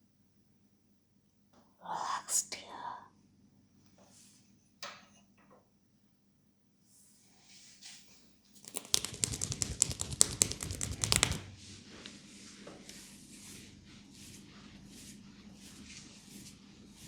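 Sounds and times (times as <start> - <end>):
fingers rustling through hair: 8.6 - 11.6.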